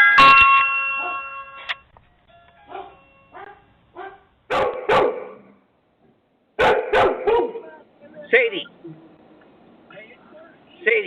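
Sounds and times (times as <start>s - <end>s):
doorbell chime: 0.0s - 3.4s
dog barking: 2.7s - 5.6s, 6.6s - 7.7s.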